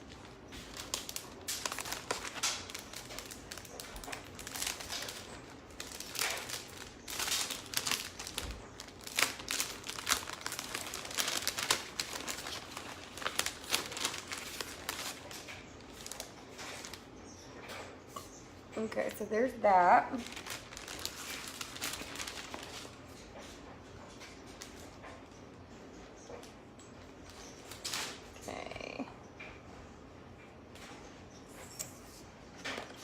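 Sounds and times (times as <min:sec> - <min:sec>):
plastic sheets crinkling: 0:00.0 - 0:17.1, 0:18.8 - 0:23.6, 0:27.3 - 0:28.3.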